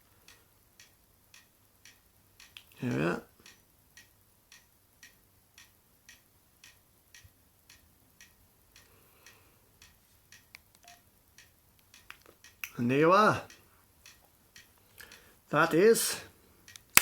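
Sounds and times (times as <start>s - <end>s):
faint regular ticking: 0.0s - 17.0s
quick clicks: 16.7s - 17.0s.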